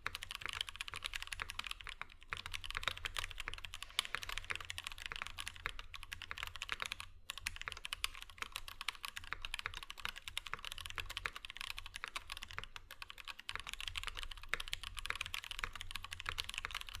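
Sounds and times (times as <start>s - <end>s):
fast mechanical keyboard typing: 0.0s - 17.0s.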